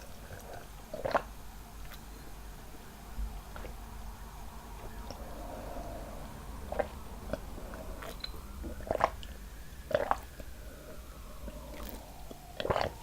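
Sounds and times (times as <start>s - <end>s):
wet mouth sounds: 0.0s - 2.1s, 4.8s - 13.0s
close-miked chewing: 0.0s - 3.9s, 4.5s - 13.0s.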